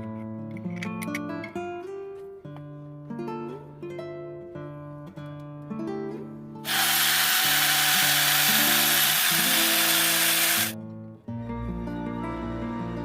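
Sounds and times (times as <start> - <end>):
acoustic guitar music: 0.0 - 6.7
loud steady hissing: 6.7 - 10.7.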